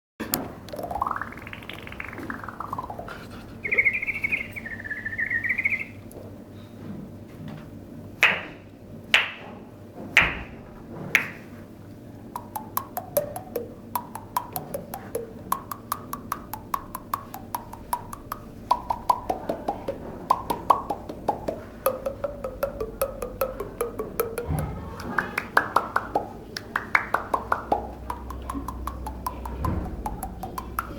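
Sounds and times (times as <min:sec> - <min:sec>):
hollow mouth pops: 0:00.7 - 0:05.8, 0:12.4 - 0:30.9
melodic mouth clicks: 0:00.7 - 0:05.9, 0:12.4 - 0:30.9.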